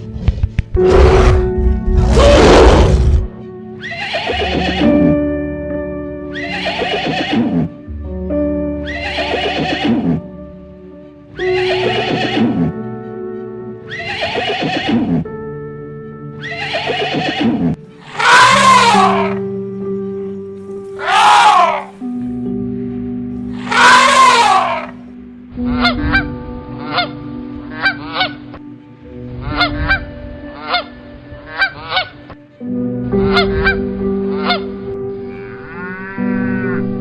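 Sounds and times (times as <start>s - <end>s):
background music: 0.0s - 37.0s
horse whinnying: 2.0s - 5.0s, 6.4s - 7.7s, 8.9s - 10.2s, 11.4s - 12.8s, 13.9s - 15.3s, 16.4s - 19.4s, 21.0s - 21.9s, 23.6s - 24.9s.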